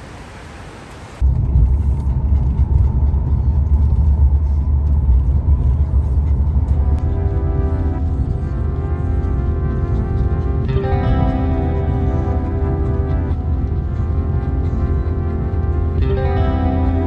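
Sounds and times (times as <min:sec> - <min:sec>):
car driving interior rumble: 0:00.9 - 0:17.0.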